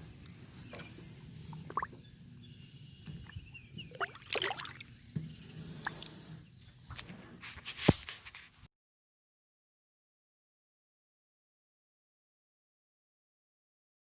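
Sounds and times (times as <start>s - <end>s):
water splashing and dripping: 1.5s - 2.3s, 3.0s - 6.1s.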